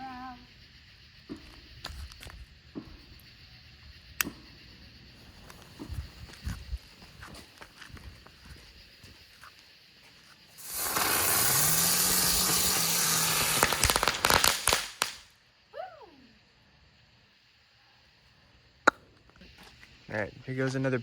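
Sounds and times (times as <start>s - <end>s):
spinning firework hissing: 0.0s - 7.2s, 8.1s - 18.8s
firework crackling pops: 10.5s - 15.5s.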